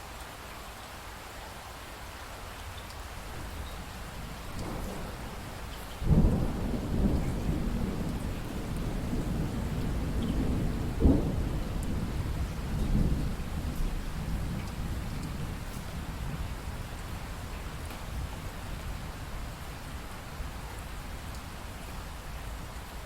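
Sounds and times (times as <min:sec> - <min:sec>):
steady rain: 0:00.0 - 0:23.0
thunder rumbling: 0:03.4 - 0:19.0
sharp thunder clap: 0:04.6 - 0:15.0.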